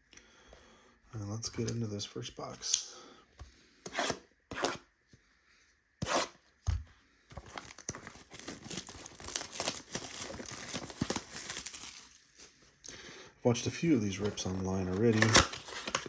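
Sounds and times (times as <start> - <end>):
crinkly packaging tearing: 7.5 - 12.2, 14.1 - 16.0.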